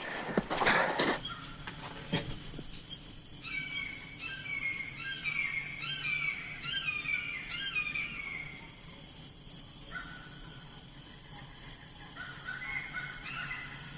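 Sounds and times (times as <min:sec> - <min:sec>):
insects trilling: 0:00.0 - 0:13.9.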